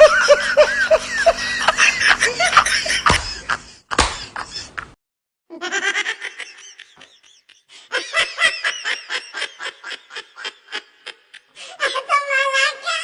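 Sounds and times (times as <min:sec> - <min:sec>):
person laughing: 0:00.0 - 0:12.1.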